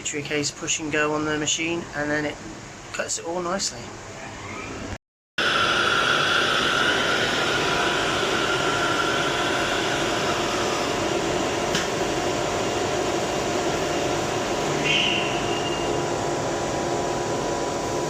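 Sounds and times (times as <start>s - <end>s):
router spindle whining: 5.4s - 11.4s.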